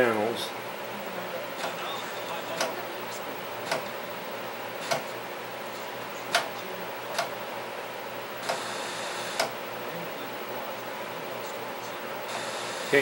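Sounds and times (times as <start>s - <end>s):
steady tv hiss: 0.0s - 13.0s
rotary tv knob clicking: 2.6s - 2.8s, 3.7s - 3.9s, 4.8s - 5.1s.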